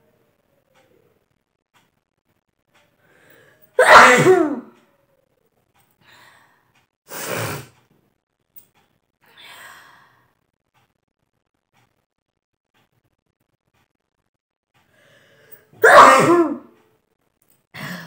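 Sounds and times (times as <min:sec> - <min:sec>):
woman sneezing loudly: 0:03.8 - 0:04.7, 0:15.8 - 0:16.7.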